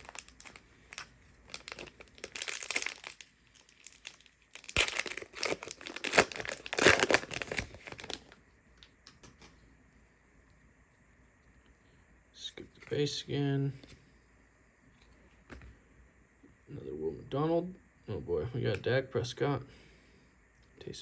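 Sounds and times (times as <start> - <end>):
foil wrapper crinkling and tearing: 0.0 - 8.4.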